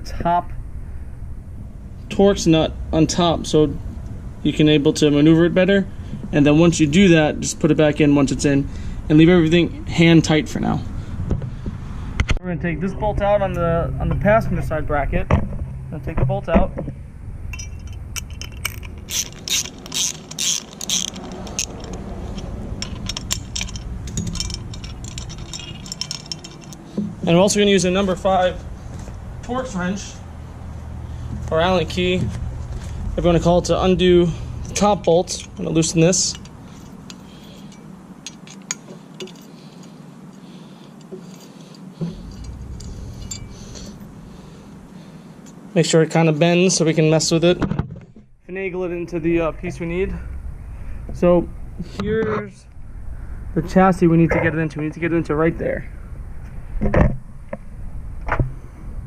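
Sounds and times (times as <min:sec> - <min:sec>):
low rumble: 0:00.0 - 0:04.5, 0:52.5 - 0:59.0
ratchet wrench clicking: 0:17.6 - 0:26.8, 0:34.6 - 0:39.9.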